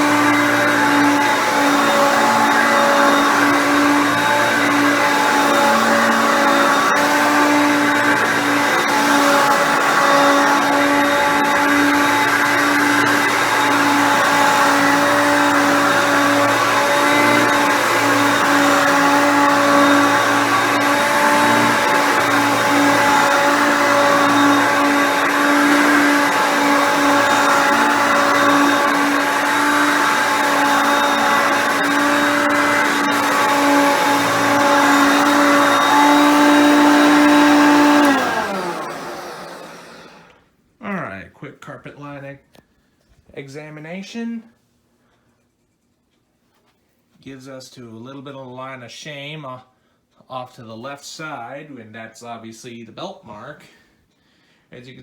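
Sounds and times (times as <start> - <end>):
vacuum cleaner running: 0.0 - 40.4
vacuum cleaner winding down: 0.0 - 40.4.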